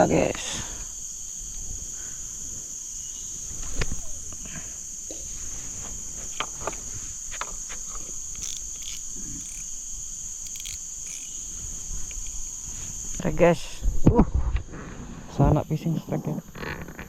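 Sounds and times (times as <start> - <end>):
high-pitched insect chorus: 0.0 - 17.0
short clicks: 8.3 - 9.7, 10.4 - 11.4.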